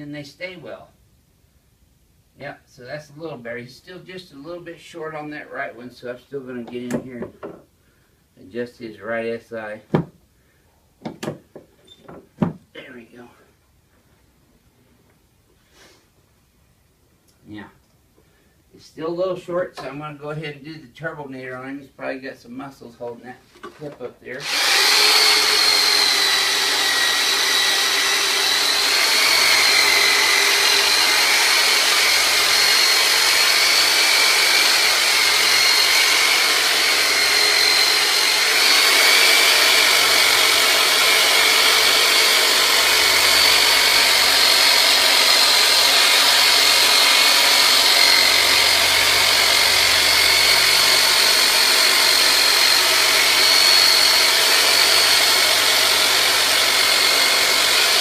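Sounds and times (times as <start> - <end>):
electric massager motor whine: 24.4 - 58.0.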